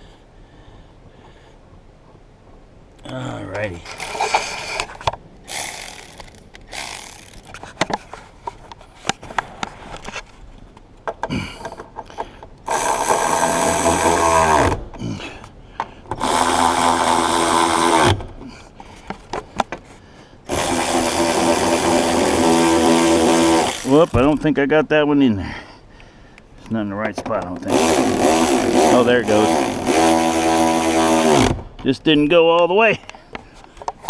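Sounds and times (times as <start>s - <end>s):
cordless driver motor: 3.9s - 4.9s, 5.5s - 7.6s, 12.7s - 14.8s, 16.1s - 18.2s, 20.5s - 24.4s, 27.6s - 31.6s.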